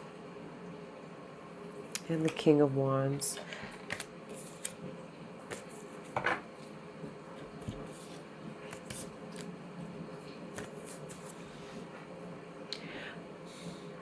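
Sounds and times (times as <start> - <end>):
cards clicking and rustling: 3.8 - 4.8, 5.5 - 5.8, 7.8 - 9.5, 10.5 - 11.4.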